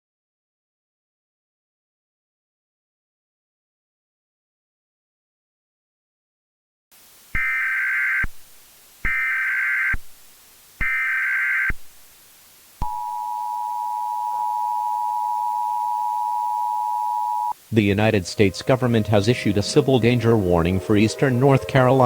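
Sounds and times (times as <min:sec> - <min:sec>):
harsh digital data tones: 0:12.8 - 0:22.0
two-tone attention signal: 0:12.8 - 0:22.0.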